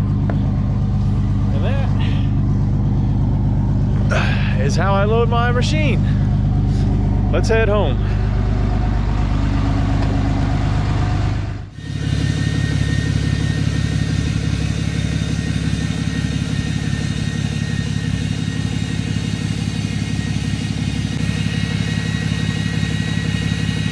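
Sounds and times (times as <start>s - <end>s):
vehicle engine running: 0.0s - 23.9s
faint high whine: 11.7s - 23.9s.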